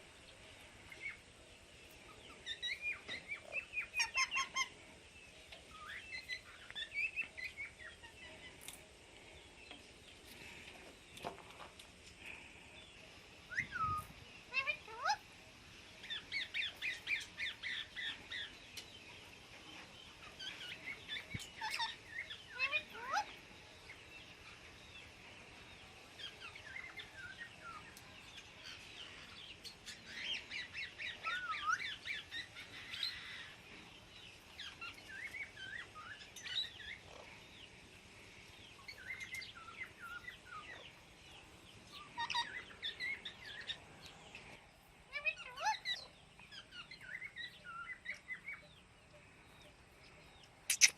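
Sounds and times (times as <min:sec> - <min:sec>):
parrots chirping and calling: 0:02.3 - 0:04.9, 0:13.5 - 0:15.4, 0:20.2 - 0:23.4, 0:26.2 - 0:33.6, 0:34.5 - 0:37.6, 0:38.8 - 0:41.0, 0:41.8 - 0:43.8, 0:45.1 - 0:48.6, 0:50.7 - 0:50.9.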